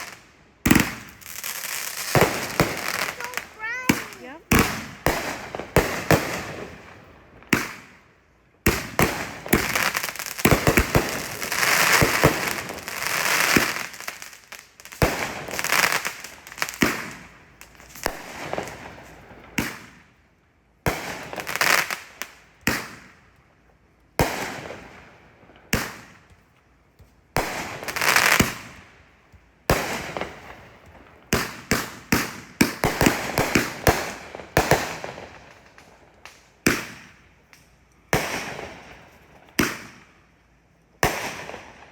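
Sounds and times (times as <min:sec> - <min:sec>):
fireworks bangs: 0:00.0 - 0:08.0, 0:08.7 - 0:14.3, 0:27.4 - 0:29.0, 0:29.6 - 0:37.2
hissing crackle of fireworks: 0:00.0 - 0:41.9.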